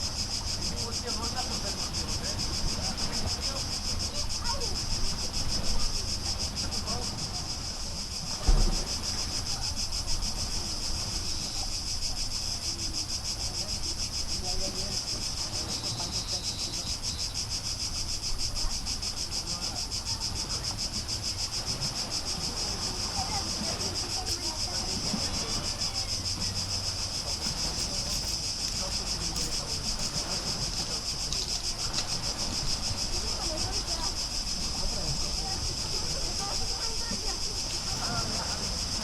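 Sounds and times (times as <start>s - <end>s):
insects buzzing trill: 0.0s - 39.0s
low thump: 8.4s - 9.2s.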